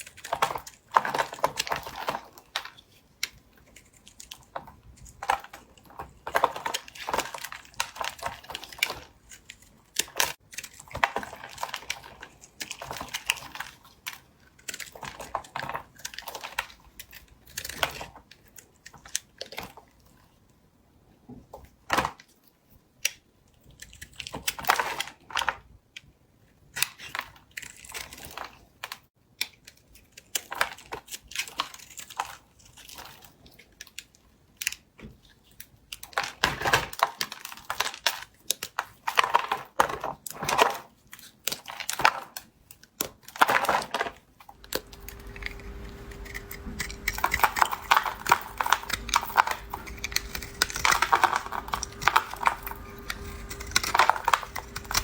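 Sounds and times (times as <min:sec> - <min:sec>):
knife cutting soap: 0:00.0 - 0:20.2, 0:40.4 - 0:55.0
soap crumbling: 0:00.0 - 0:20.3, 0:26.8 - 0:55.0
faint steady hum: 0:44.6 - 0:55.0.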